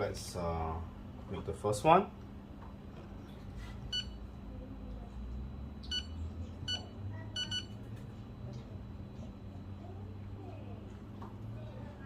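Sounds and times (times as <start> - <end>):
faint low hum: 0.0 - 12.0
appliance button beeps: 5.8 - 7.7.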